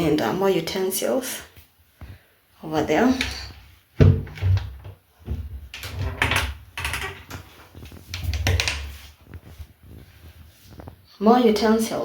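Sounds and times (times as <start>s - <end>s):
cupboard knocks and clatter: 4.0s - 10.0s.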